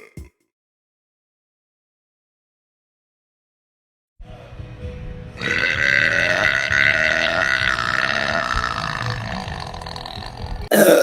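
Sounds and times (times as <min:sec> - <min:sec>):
woman burping: 0:05.4 - 0:11.0.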